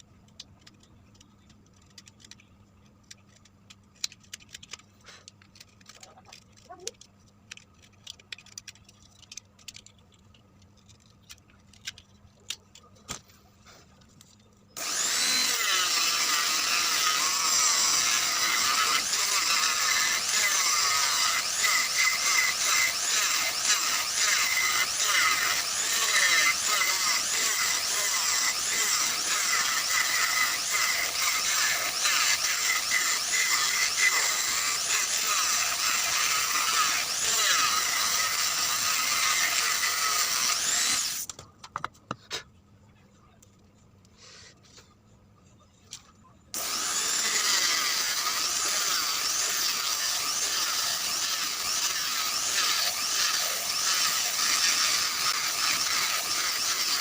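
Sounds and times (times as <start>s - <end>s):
power tool cutting wood: 14.8s - 41.3s, 46.6s - 57.0s.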